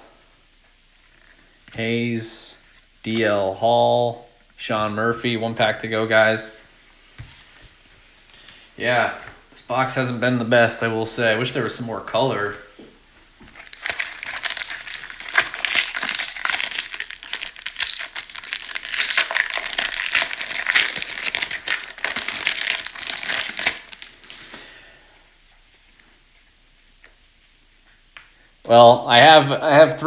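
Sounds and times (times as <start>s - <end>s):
foil wrapper crinkling: 13.5s - 24.7s.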